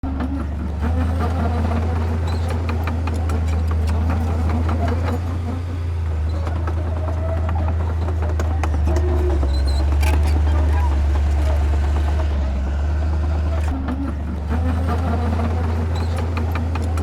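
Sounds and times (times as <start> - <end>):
heavy machinery diesel engine running: 0.0 - 17.0
metal clanks and clicks: 0.1 - 14.2.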